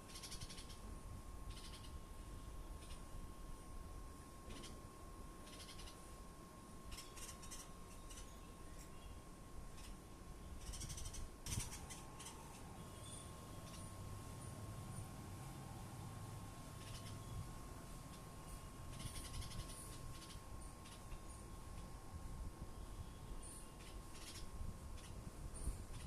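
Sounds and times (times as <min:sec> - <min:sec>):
mynas calling: 0:00.0 - 0:00.9, 0:01.5 - 0:02.0, 0:05.4 - 0:06.0, 0:10.6 - 0:15.9, 0:16.6 - 0:17.4, 0:18.1 - 0:21.3
faint steady hum: 0:00.0 - 0:26.0.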